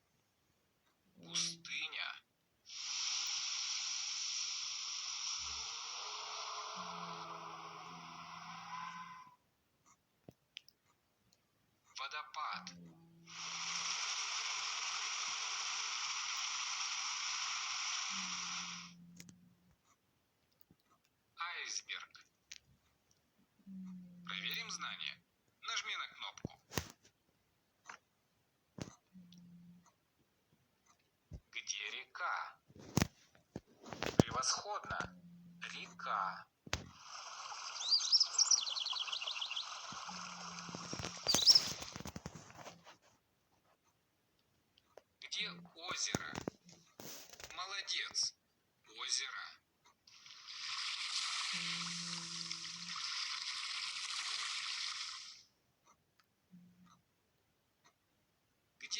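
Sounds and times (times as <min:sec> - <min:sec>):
small birds chirping: 0:36.9 - 0:42.3.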